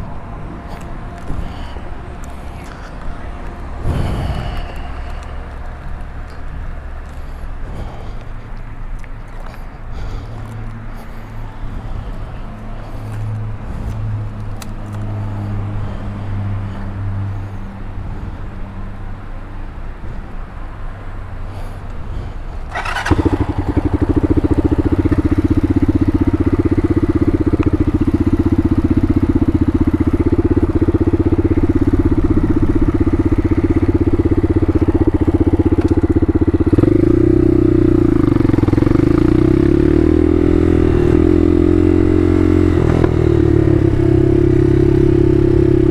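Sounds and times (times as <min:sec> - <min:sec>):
motorcycle engine idling: 0:22.7 - 0:45.9
motorcycle engine revving: 0:22.7 - 0:45.9.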